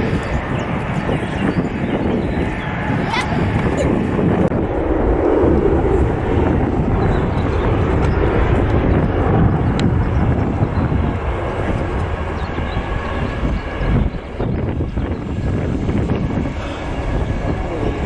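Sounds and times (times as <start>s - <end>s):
jet engines roaring: 0.0s - 18.0s.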